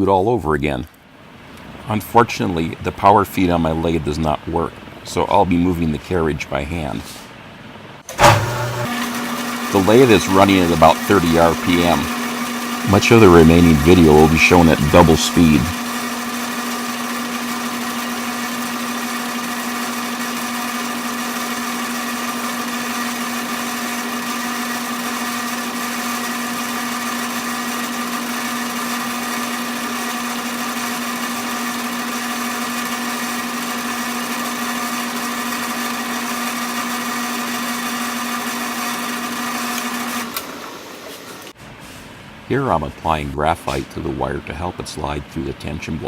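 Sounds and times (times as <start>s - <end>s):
metal lathe whining: 8.1s - 41.6s.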